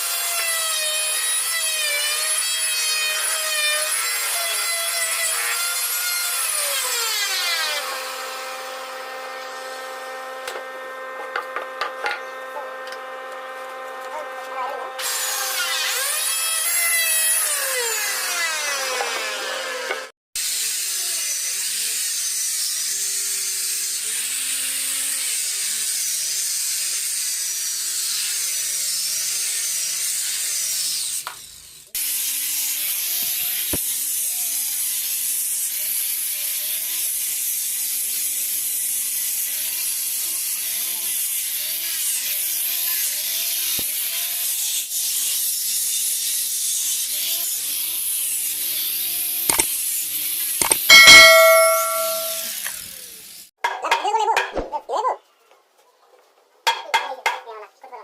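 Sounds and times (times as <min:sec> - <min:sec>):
power tool grinding wood: 0:00.0 - 0:33.8.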